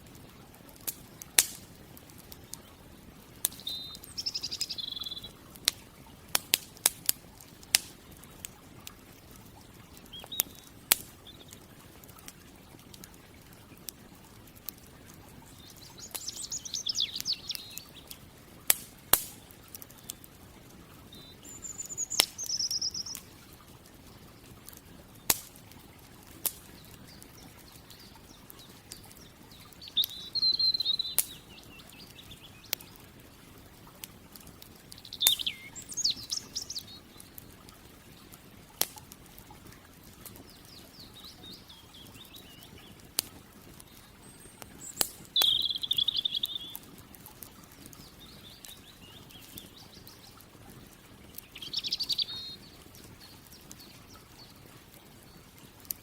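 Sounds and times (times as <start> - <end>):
campfire crackling and popping: 0.0 - 56.0
songbird twittering: 3.5 - 5.4, 10.0 - 11.6, 15.4 - 18.2, 21.0 - 23.3, 26.6 - 33.0, 34.8 - 37.4, 40.4 - 43.0, 43.8 - 46.9, 47.8 - 50.4, 51.2 - 55.4.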